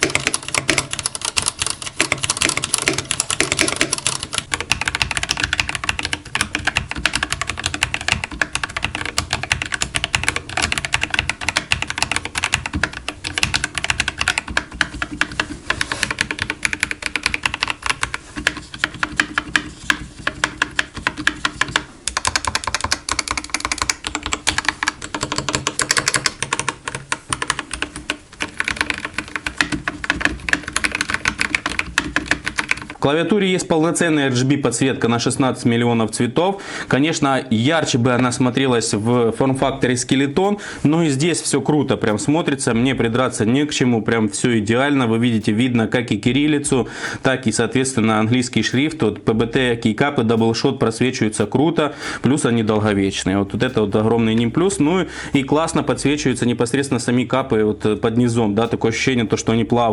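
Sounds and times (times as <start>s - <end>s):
mechanical keyboard typing: 0.0s - 33.0s.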